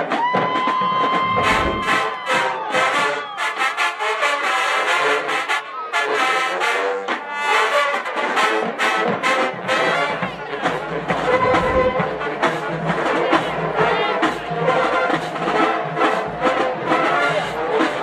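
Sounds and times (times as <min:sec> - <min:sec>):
low drums: 0:00.9 - 0:02.2, 0:10.7 - 0:12.9
brass section playing: 0:09.3 - 0:12.7.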